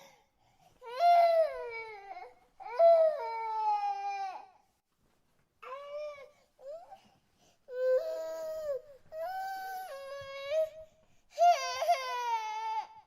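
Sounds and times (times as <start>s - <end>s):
baby crying: 11.4s - 13.0s.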